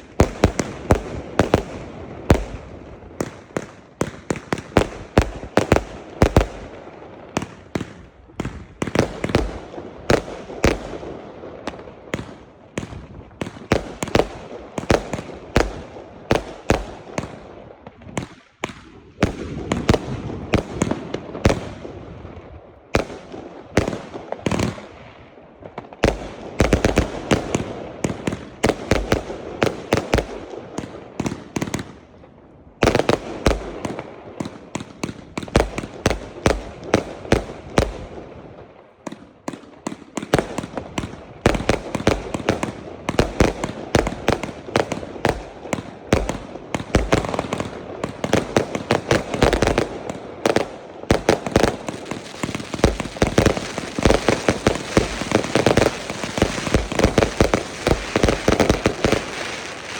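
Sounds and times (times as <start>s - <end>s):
fireworks bangs and crackles: 0.0s - 59.9s.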